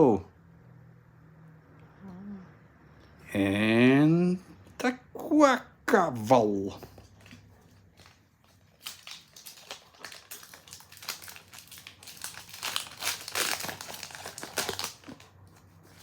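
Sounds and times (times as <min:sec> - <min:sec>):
plastic foil wrapper crinkling: 0:07.0 - 0:16.0.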